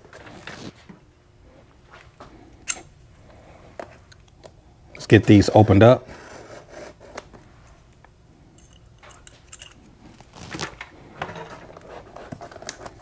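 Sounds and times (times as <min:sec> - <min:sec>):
packaging rustles: 0:10.1 - 0:10.9.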